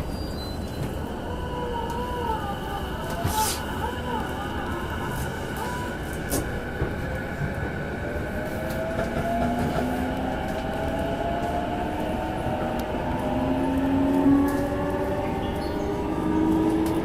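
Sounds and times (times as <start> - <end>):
train wheels on rails: 2.9 - 17.0.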